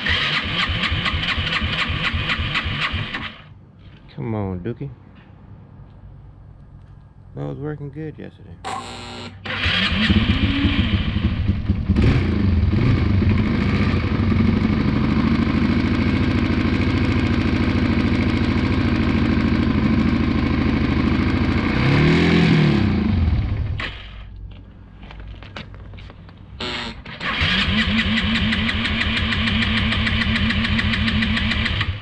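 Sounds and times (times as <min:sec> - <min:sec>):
motorcycle engine revving: 0:00.0 - 0:03.5, 0:08.7 - 0:24.3, 0:26.6 - 0:32.0.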